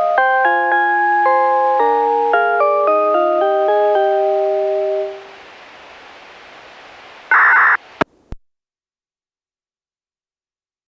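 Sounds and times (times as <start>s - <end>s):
steady speaker hiss: 0.0s - 8.4s
loud burst of static: 5.1s - 8.3s.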